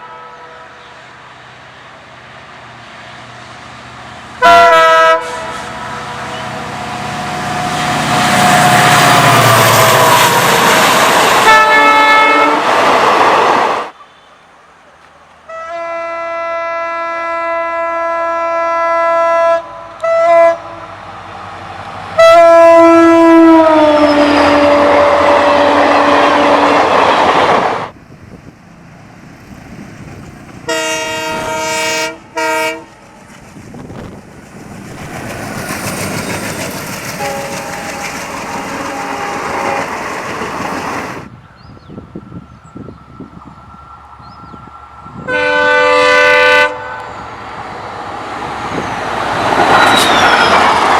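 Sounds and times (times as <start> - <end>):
diesel locomotive horn blasts: 0.0 - 1.2, 4.4 - 12.7, 15.4 - 21.1, 22.2 - 27.4, 30.6 - 33.0, 37.1 - 40.2, 45.1 - 47.4
passing train rumble: 0.0 - 50.9
rail noise: 0.0 - 50.9.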